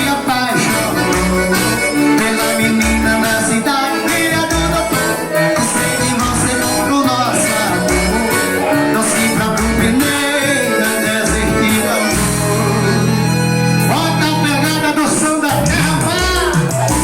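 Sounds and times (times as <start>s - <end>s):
folk dance music with singing: 0.0s - 17.0s.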